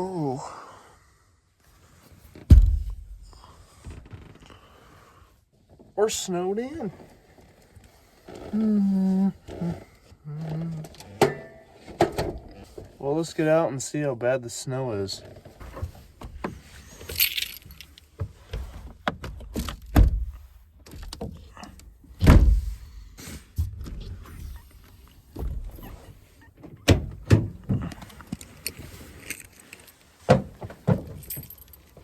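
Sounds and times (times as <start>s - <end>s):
heavy thumps: 2.5s - 3.4s
knocks clicks and jingles: 17.1s - 18.1s, 26.6s - 32.0s.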